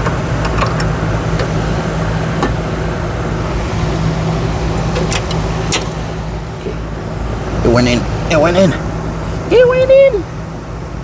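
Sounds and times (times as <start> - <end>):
fitting clicking and tapping: 0.0 - 1.6, 4.8 - 6.0
low mechanical hum: 0.0 - 11.0.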